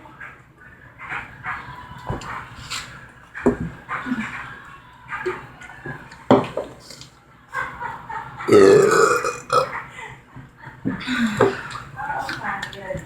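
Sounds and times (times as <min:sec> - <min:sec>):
person burping: 0:08.5 - 0:09.7.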